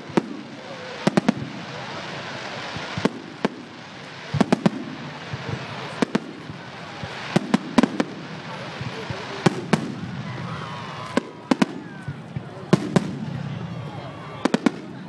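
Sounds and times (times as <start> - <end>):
background hiss and murmur: 0.0 - 15.0
fireworks bangs: 0.0 - 15.0.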